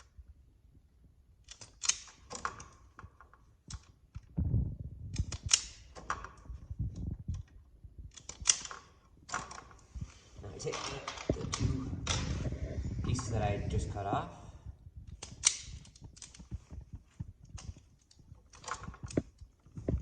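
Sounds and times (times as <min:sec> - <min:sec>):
wire stripper clicks and snaps: 0:01.4 - 0:02.8, 0:05.1 - 0:06.4, 0:08.1 - 0:09.7, 0:15.1 - 0:20.0
handling knocks and rubbing: 0:09.3 - 0:14.1.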